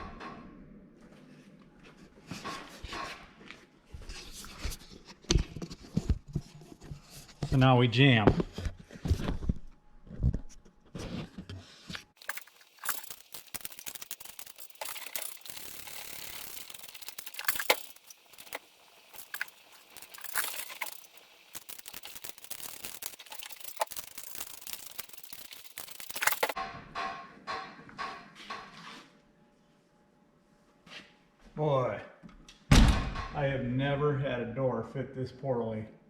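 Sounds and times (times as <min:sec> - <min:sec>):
rapid metallic clicking: 0:12.2 - 0:26.6.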